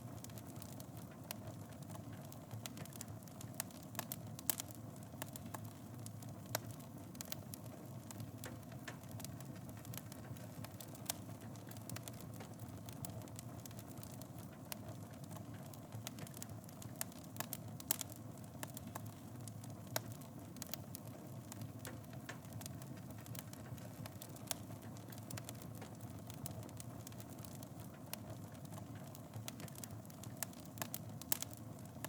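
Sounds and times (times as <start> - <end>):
fire crackles and pops: 0.0 - 32.0
low rumble of flames: 0.0 - 32.0.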